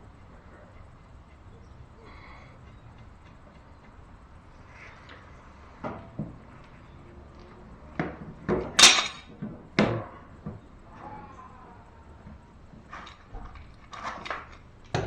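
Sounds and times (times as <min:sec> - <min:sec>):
metal parts knocking and clanking: 0:08.7 - 0:09.3.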